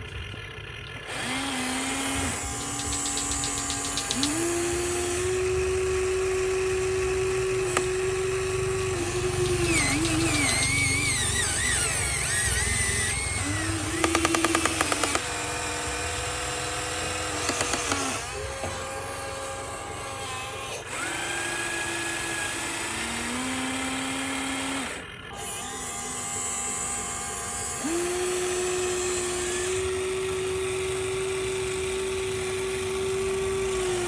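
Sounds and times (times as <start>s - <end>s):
rapid clicking rattle: 0.0s - 18.6s
toy electric motors whining: 0.0s - 34.0s.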